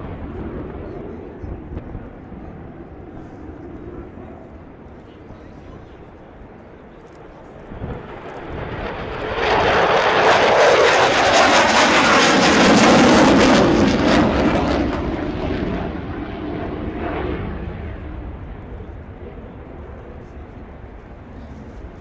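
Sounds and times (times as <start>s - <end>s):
aircraft flying past: 7.1s - 22.0s.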